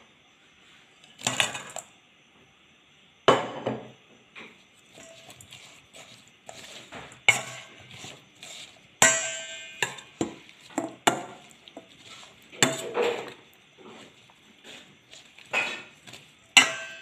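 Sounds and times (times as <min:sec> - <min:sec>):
utensils clinking against bowl: 0:04.9 - 0:17.0.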